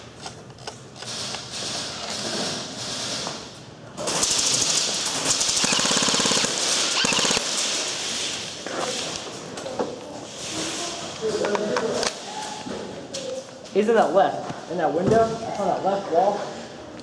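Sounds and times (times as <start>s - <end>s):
airsoft guns firing full auto: 4.0s - 8.0s.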